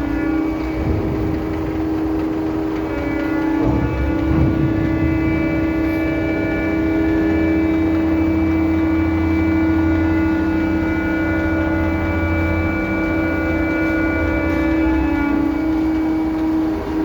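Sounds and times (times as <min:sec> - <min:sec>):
crane machinery humming drone: 0:00.0 - 0:17.0
low rumble: 0:00.3 - 0:12.4.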